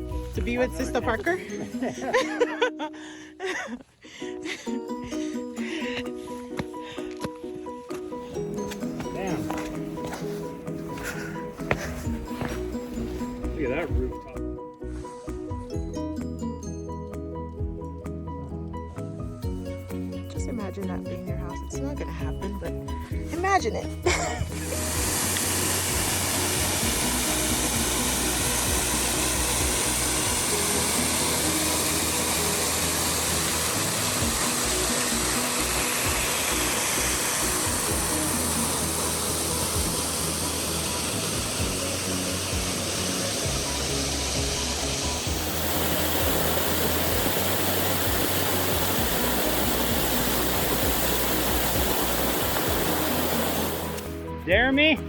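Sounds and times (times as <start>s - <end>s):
background music: 0.0s - 55.0s
waterfall roaring: 24.6s - 54.1s.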